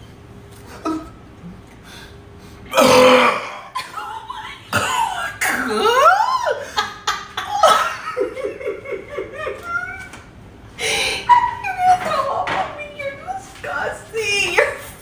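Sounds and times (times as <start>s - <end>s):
loud rough burp: 2.7s - 3.7s
person laughing: 3.7s - 10.1s.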